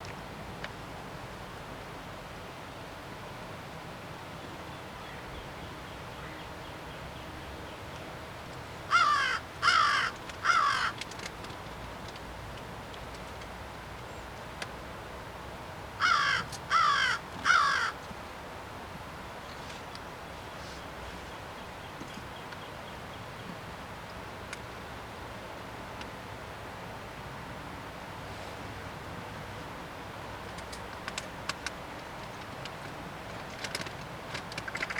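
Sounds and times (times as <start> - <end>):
crow cawing: 8.9 - 11.1, 16.0 - 18.0.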